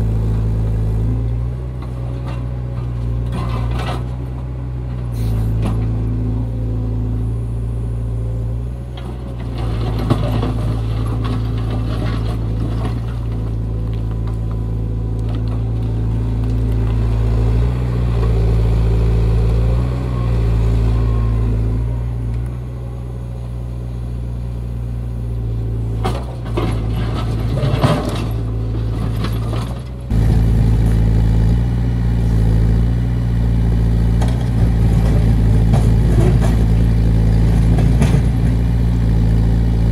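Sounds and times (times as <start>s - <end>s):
excavator diesel engine running: 0.0s - 39.9s
digging clattering and scraping: 1.7s - 6.0s, 8.9s - 17.1s, 25.9s - 30.2s, 34.2s - 38.6s.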